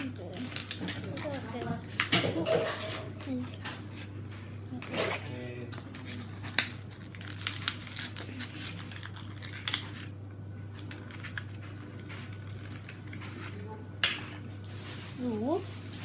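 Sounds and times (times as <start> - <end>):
plastic packaging crinkling and tearing: 0.1 - 1.6, 4.5 - 13.7.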